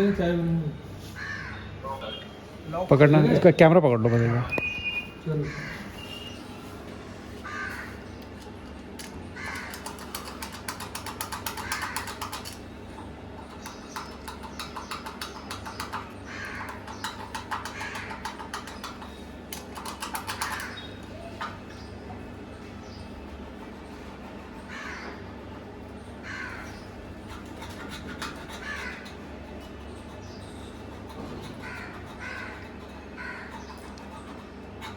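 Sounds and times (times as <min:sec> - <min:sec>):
crows cawing: 0:01.1 - 0:01.8, 0:05.3 - 0:06.2, 0:07.3 - 0:08.5, 0:09.2 - 0:10.4, 0:11.3 - 0:12.6, 0:16.2 - 0:19.3, 0:19.9 - 0:21.3, 0:24.6 - 0:29.6, 0:31.1 - 0:34.1.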